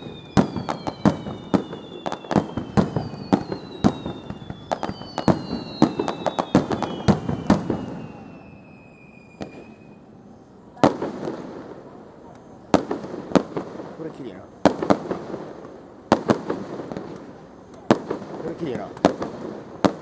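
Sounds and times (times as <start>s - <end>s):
firework bangs and crackling: 0.0s - 10.1s, 10.7s - 20.0s
firework whistles falling in pitch: 0.0s - 10.2s.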